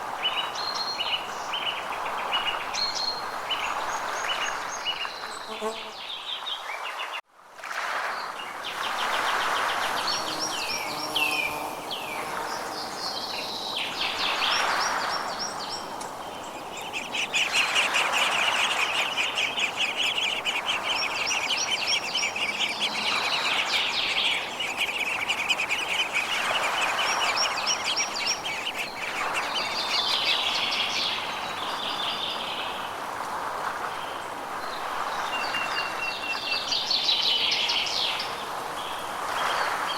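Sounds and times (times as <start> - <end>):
steady background hiss: 8.0 - 39.9
birds singing: 9.4 - 32.8
bird trilling: 16.4 - 30.9.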